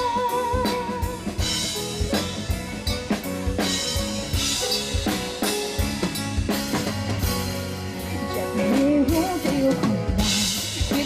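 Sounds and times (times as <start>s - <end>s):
person singing with vibrato: 0.0s - 1.7s, 8.2s - 11.0s
bass and band instruments: 0.0s - 11.0s
drum kit beat: 0.0s - 11.0s.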